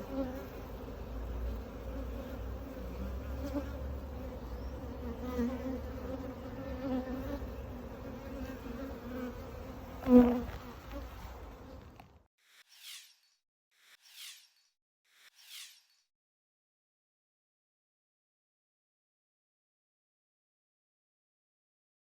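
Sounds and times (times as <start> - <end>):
sharp loud bee buzz: 0.0 - 12.0
honeybees buzzing: 0.0 - 12.2.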